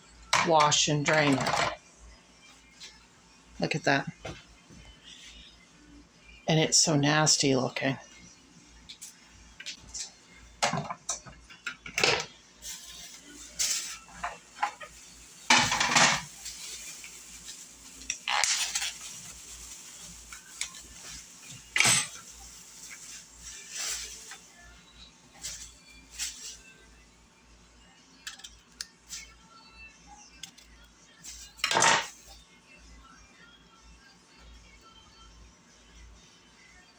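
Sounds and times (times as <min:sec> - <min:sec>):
kitchen utensils and dishes clinking: 0:00.4 - 0:01.8, 0:09.9 - 0:24.5, 0:31.3 - 0:32.3.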